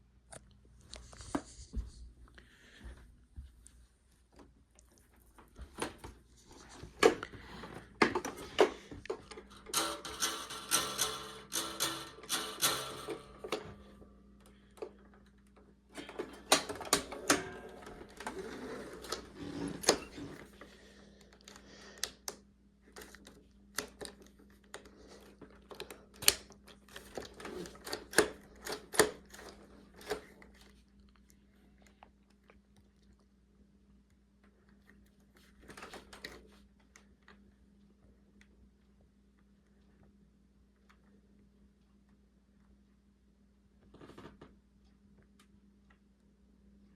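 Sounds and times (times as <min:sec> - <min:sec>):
faint low hum: 0:00.0 - 0:46.9
plastic parts clicking and rustling: 0:05.1 - 0:31.3.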